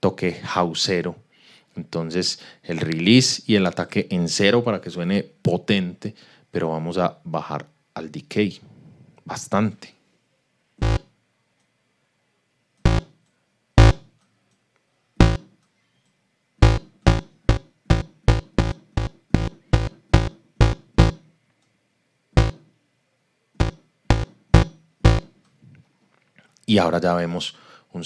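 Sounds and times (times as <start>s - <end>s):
synthesizer bass notes: 10.8s - 11.0s, 12.9s - 13.1s, 13.8s - 14.1s, 15.2s - 15.5s, 16.6s - 21.2s, 22.4s - 22.6s, 23.6s - 25.3s.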